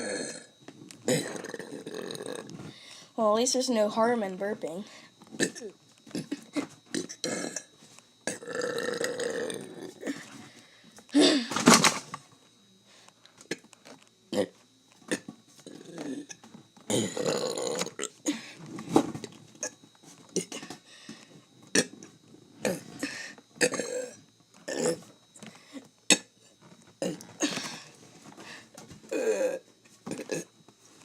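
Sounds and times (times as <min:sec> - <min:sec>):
person burping: 0:00.0 - 0:02.6, 0:05.3 - 0:10.3, 0:11.1 - 0:11.7, 0:14.3 - 0:18.4, 0:20.4 - 0:20.8, 0:21.7 - 0:25.1, 0:26.1 - 0:26.4, 0:27.0 - 0:27.8, 0:29.1 - 0:30.5.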